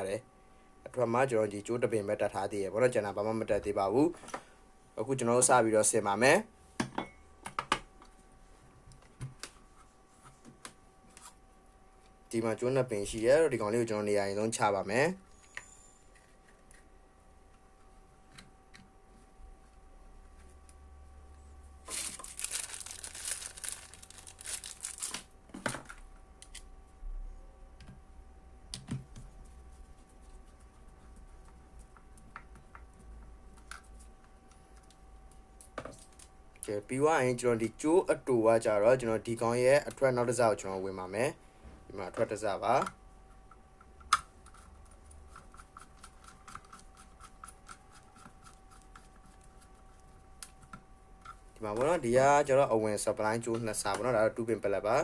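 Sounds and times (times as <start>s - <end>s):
faint steady hum: 0.0s - 55.0s
crinkling and rustling: 21.8s - 26.6s
small clicks and scrapes: 43.2s - 51.5s.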